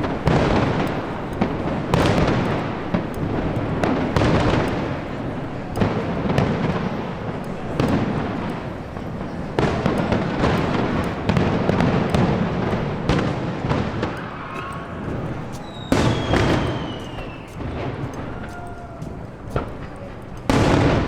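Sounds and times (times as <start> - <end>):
fireworks bangs with rumbling echo: 0.0 - 21.0
falling firework whistle: 14.2 - 18.9.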